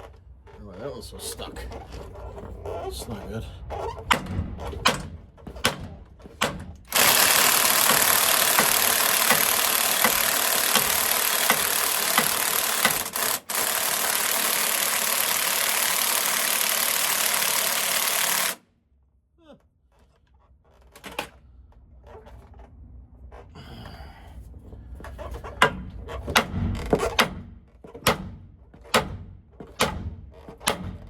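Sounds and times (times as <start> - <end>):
power tool running: 6.9 - 18.6.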